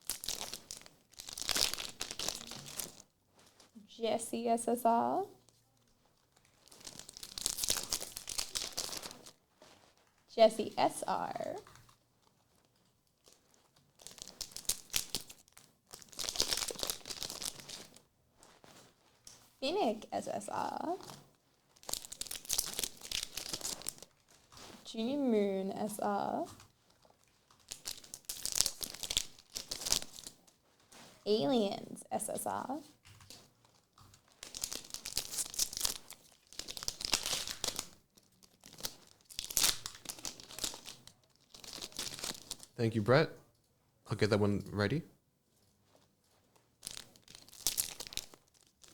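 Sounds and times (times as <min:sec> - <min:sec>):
card wrapper crinkling and tearing: 0:00.0 - 0:03.0, 0:06.4 - 0:09.4, 0:12.6 - 0:18.6, 0:21.0 - 0:24.8, 0:26.6 - 0:30.4, 0:33.2 - 0:42.8, 0:46.8 - 0:48.9.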